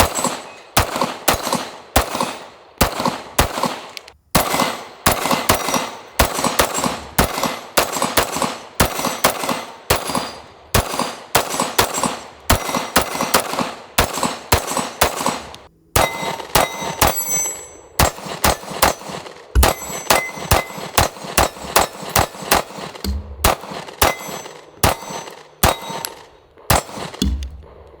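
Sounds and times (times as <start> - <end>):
pistol shots: 0.0 - 28.0
short metallic ring: 16.0 - 18.0, 19.8 - 20.8.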